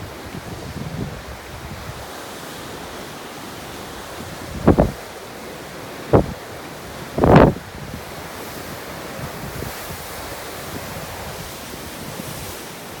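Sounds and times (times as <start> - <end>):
wind gusts hitting microphone: 0.0 - 2.2, 3.9 - 5.2, 6.0 - 12.6
storm wind over the sea: 0.0 - 13.0.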